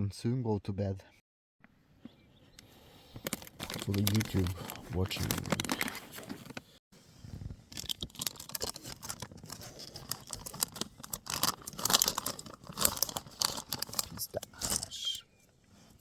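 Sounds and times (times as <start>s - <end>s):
fabric or plastic rustling: 3.2s - 15.1s.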